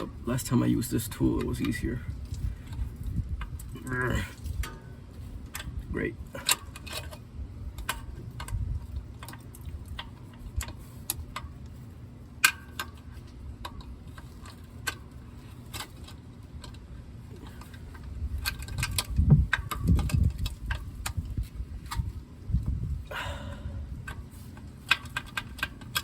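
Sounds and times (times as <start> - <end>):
metallic clicks of oil filter wrench: 0.0 - 11.8, 12.4 - 26.0
low thumping and rumbling: 2.0 - 10.6, 17.3 - 24.1.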